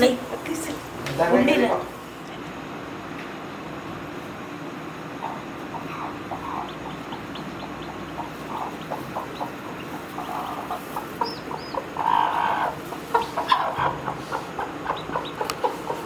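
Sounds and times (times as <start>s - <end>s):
hen clucking: 5.0s - 16.0s
high peeps: 5.2s - 16.0s.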